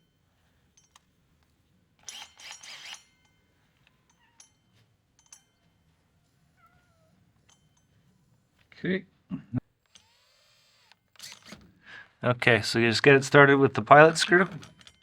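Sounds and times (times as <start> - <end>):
metal parts clicking and rattling: 0.7 - 1.2, 2.0 - 5.8, 14.2 - 15.0.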